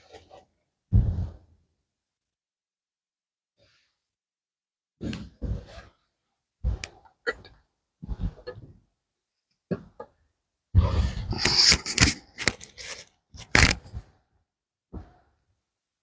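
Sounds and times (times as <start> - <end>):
knocks scrapes and rustles: 11.0 - 14.0.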